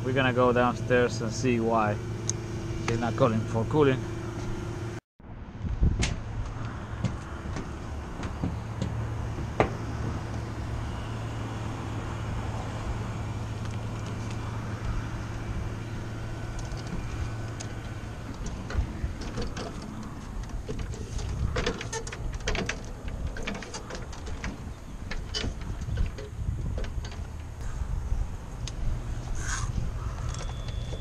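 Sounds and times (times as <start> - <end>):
low machinery hum: 0.0 - 31.0
knocks and clicks of handling: 16.6 - 27.5.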